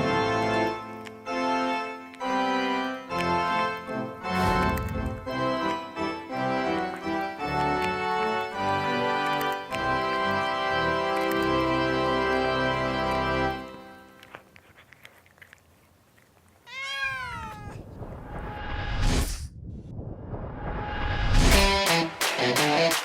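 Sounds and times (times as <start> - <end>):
organ-like keyboard chords: 0.0 - 14.2
bass notes: 4.1 - 6.9.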